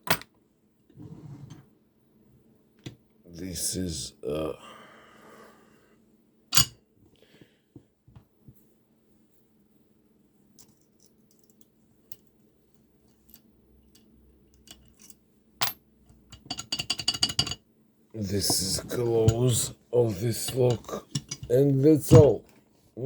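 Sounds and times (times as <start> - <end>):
small metal clicks and clinks: 10.6 - 12.3.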